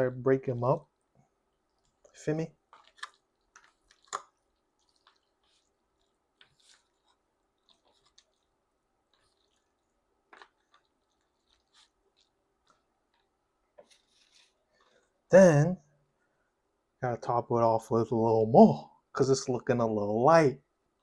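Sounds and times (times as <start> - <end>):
wet clicks of noodles stirred: 1.6 - 15.0.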